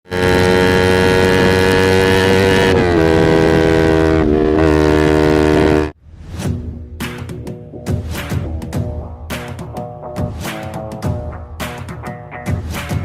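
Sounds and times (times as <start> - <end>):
motorcycle engine at high revs: 0.0 - 5.9
music: 6.1 - 13.0.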